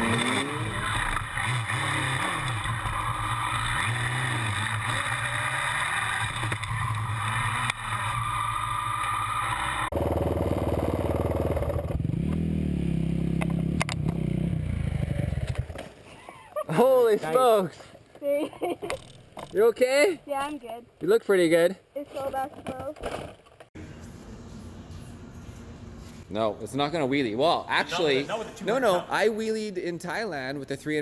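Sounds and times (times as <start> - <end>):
motorcycle engine revving: 0.0 - 15.9.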